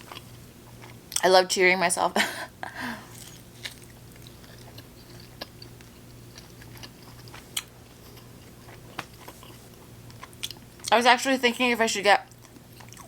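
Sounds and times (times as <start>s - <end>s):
person chewing: 0.0s - 1.2s, 3.0s - 10.9s, 12.3s - 13.0s
faint steady hum: 0.0s - 13.0s.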